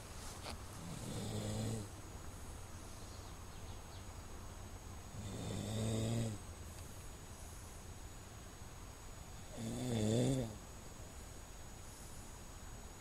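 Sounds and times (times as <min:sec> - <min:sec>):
man snoring: 0:00.8 - 0:01.9, 0:05.1 - 0:06.4, 0:09.5 - 0:10.6.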